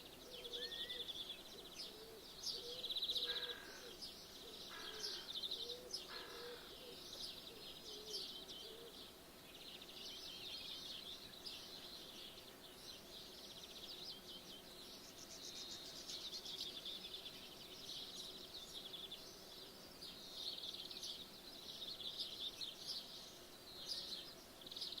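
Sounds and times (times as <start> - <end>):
songbirds chirping and trilling: 0.0 - 25.0
low cooing call: 0.2 - 9.1.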